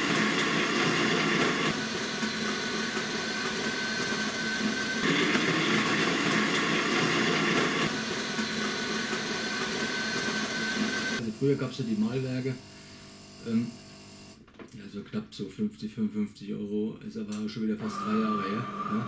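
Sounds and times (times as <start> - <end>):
coffee grinder whirring: 0.0 - 13.7, 17.8 - 19.0.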